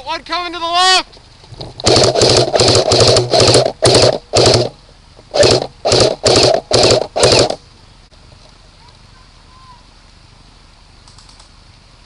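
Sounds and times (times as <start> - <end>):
airsoft gun rapid clicking bursts: 1.6 - 7.6.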